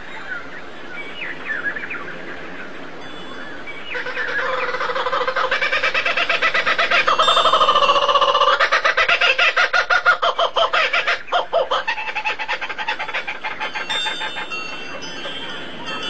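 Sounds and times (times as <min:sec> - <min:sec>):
birds chirping: 0:00.0 - 0:16.0
bird rapid pulsing call: 0:03.9 - 0:15.9.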